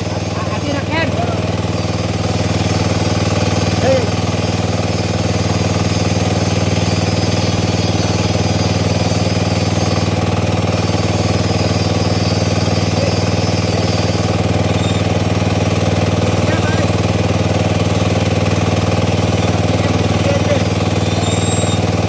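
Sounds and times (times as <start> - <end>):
drilling rig engine running: 0.0 - 22.0.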